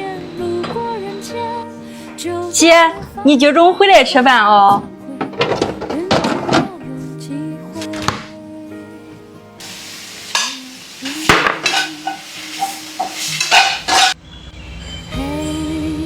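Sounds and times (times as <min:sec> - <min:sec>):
soft background music: 0:00.0 - 0:16.0
food sizzling in a pan: 0:09.6 - 0:14.2
metal utensil scraping pan: 0:09.6 - 0:14.2.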